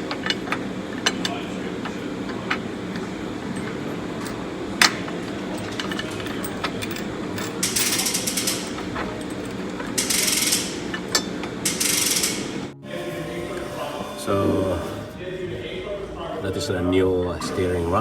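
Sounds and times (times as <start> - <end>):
metallic tool clinks: 4.2 - 11.0
ratchet wrench clicking: 4.2 - 12.6.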